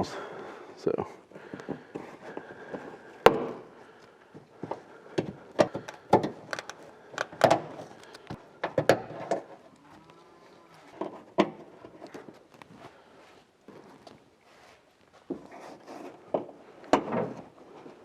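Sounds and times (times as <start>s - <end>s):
plastic clips clicking and knocking: 5.6s - 9.0s.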